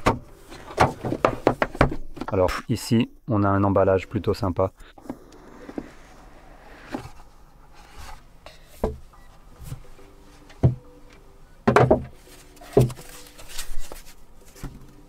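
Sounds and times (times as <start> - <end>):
knocks and thuds: 0.8 - 2.3, 11.7 - 12.1
cardboard sliding and rubbing: 5.0 - 8.3, 12.2 - 15.0.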